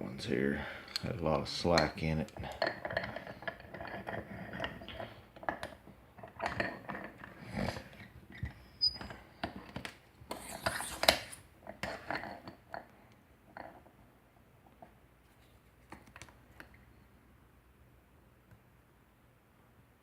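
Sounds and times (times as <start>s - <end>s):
metal clinking and scraping of locks: 1.7s - 12.8s.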